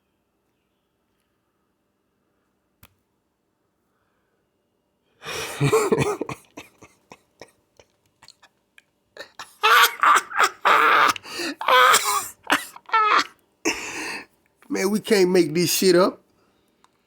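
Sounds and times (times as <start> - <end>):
man coughing: 5.3 - 7.2, 9.2 - 14.2.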